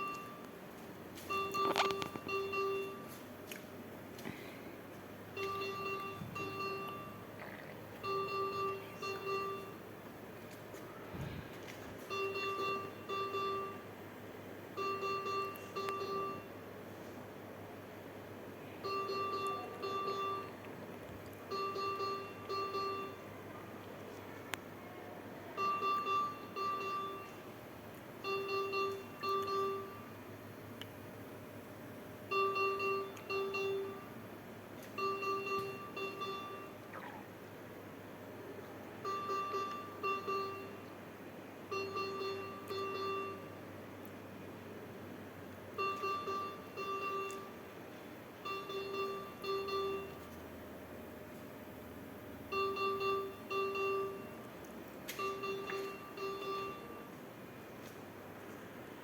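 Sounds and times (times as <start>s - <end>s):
medical alarm beeping: 0.0s - 0.5s, 1.2s - 3.2s, 5.3s - 7.3s, 8.0s - 9.9s, 12.0s - 13.9s, 14.8s - 16.6s, 18.8s - 20.6s, 21.5s - 23.3s, 25.6s - 27.6s, 28.2s - 30.2s, 32.2s - 34.2s, 35.0s - 37.2s, 39.0s - 40.9s, 41.7s - 43.6s, 45.8s - 47.6s, 48.4s - 50.3s, 52.5s - 54.5s, 55.1s - 57.2s
faint steady low hum: 0.0s - 59.0s.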